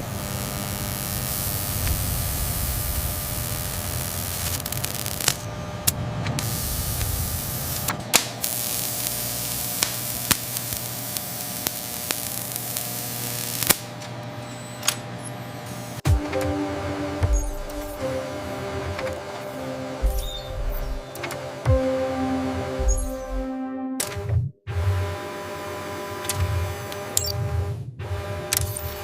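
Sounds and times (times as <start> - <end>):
low hum: 16.1 - 24.2.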